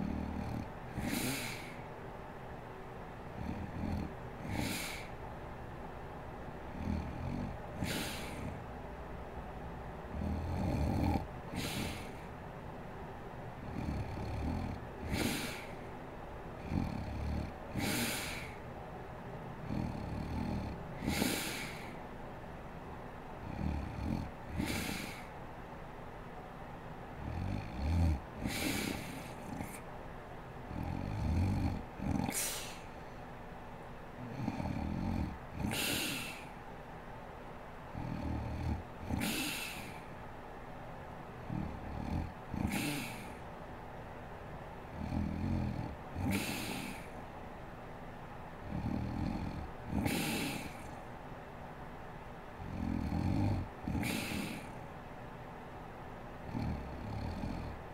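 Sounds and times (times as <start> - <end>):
woman snoring: 0.0 - 1.8, 3.4 - 5.2, 6.7 - 8.6, 10.1 - 12.3, 13.6 - 15.9, 16.6 - 18.6, 19.6 - 22.0, 23.4 - 25.3, 27.2 - 29.8, 30.7 - 33.1, 34.2 - 36.5, 37.9 - 40.1, 41.4 - 43.4, 44.9 - 47.2, 48.6 - 51.0, 52.6 - 54.8, 56.4 - 57.9
breathy hiss of air: 0.0 - 1.9, 4.4 - 5.2, 7.8 - 8.6, 11.5 - 12.3, 15.0 - 15.9, 17.7 - 18.6, 21.0 - 22.1, 24.1 - 25.4, 28.4 - 29.8, 32.1 - 33.2, 34.2 - 36.6, 39.1 - 40.2, 42.6 - 43.4, 46.2 - 47.2, 49.9 - 51.1, 53.9 - 54.9.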